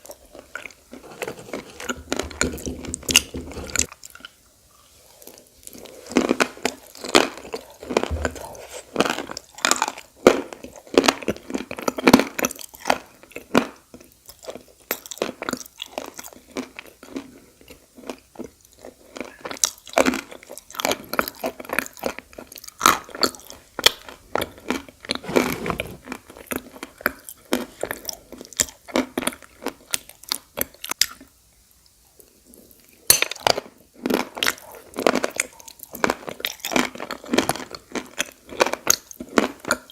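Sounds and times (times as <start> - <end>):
crunching and chewing clay: 8.8 - 25.2, 26.0 - 31.3, 32.1 - 39.9.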